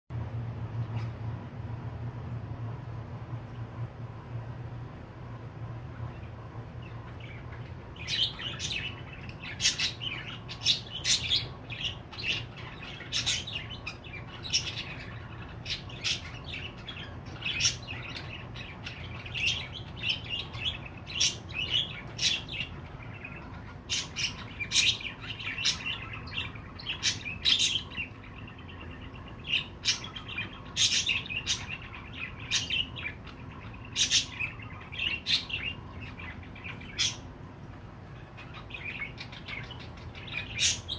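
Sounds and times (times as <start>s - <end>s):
low steady hum: 0.1s - 40.9s
budgerigar chirping: 8.0s - 37.3s, 38.3s - 40.9s.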